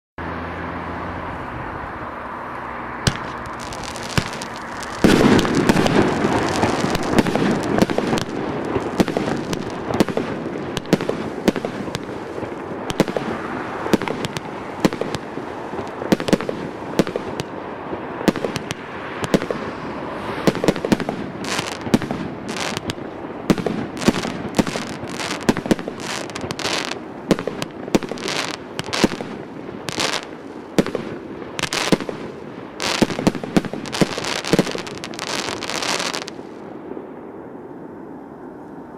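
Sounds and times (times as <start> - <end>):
fireworks sharp bangs: 3.0 - 37.1
fireworks volley and crackling: 3.0 - 37.7
fireworks fuse hiss: 3.1 - 15.2, 20.4 - 30.5, 31.6 - 36.4
fireworks pops: 3.1 - 15.2.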